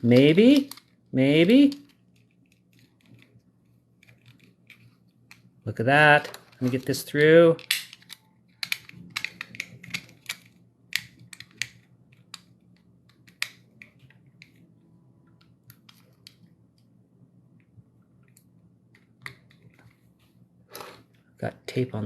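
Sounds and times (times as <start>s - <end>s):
faint steady hum: 0.0s - 22.0s
tape clicks and crinkles: 7.6s - 14.7s.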